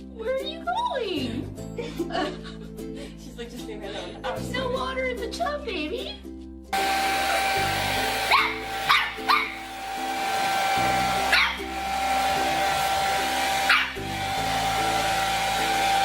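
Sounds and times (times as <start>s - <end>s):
background music: 0.0s - 16.0s
whirring machine: 6.8s - 16.0s
dog barking: 8.3s - 9.6s, 11.3s - 11.6s, 13.7s - 14.0s.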